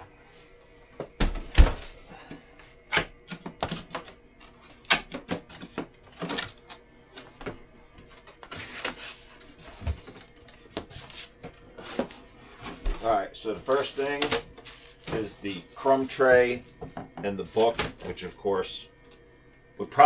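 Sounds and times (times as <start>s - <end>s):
cardboard box being opened: 13.6s - 15.5s.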